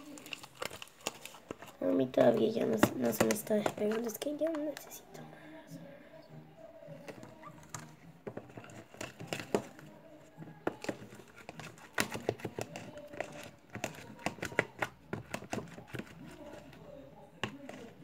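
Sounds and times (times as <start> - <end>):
sticky slime clicks and crackles: 0.0 - 1.7.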